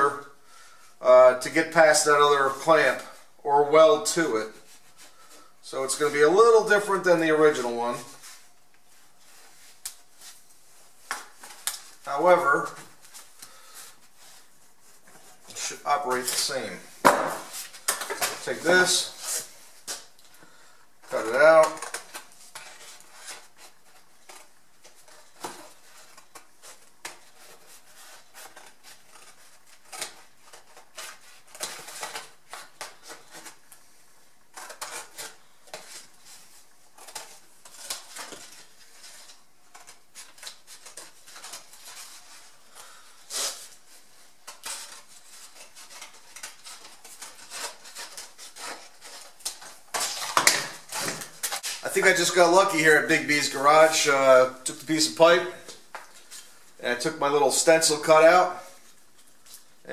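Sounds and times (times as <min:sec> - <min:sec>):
cardboard snips and rustles: 0:44.4 - 0:51.8.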